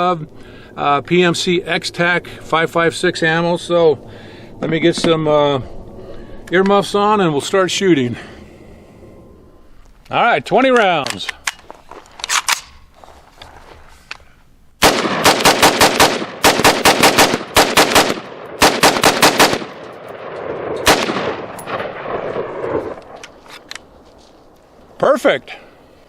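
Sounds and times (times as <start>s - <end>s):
rifle gunshots: 14.8s - 23.2s.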